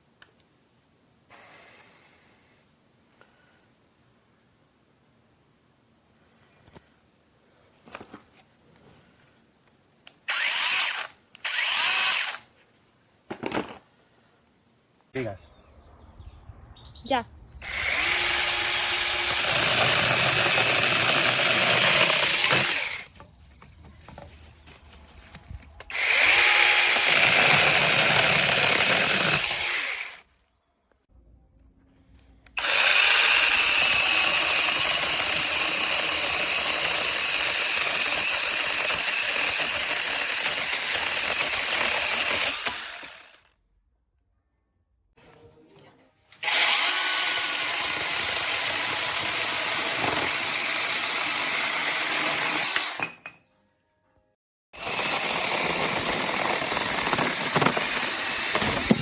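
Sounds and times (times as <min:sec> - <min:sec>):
mini chainsaw running: 0:10.3 - 0:12.4, 0:17.6 - 0:23.1, 0:25.9 - 0:30.2, 0:32.6 - 0:43.5, 0:46.4 - 0:53.0, 0:54.8 - 0:59.0.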